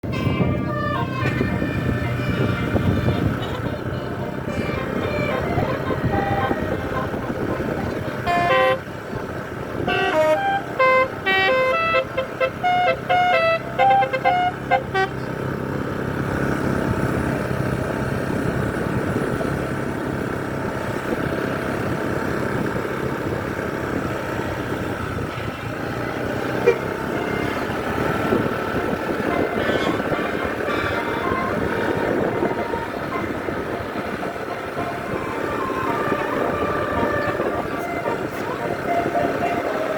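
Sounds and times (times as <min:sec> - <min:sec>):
bus horn playing melody: 0:00.0 - 0:15.5, 0:26.2 - 0:39.9
bus engine and road noise: 0:00.0 - 0:39.9.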